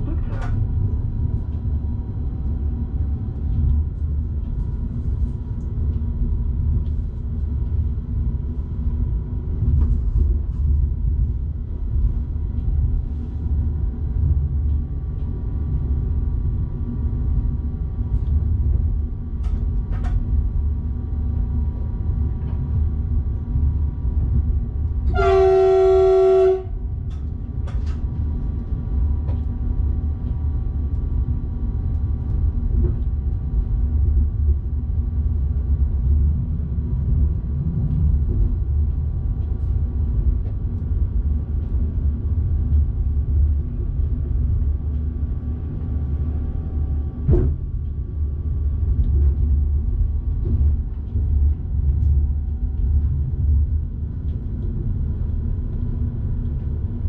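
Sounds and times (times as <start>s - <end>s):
train rumbling: 0.0s - 57.0s
train horn blast: 25.1s - 26.8s.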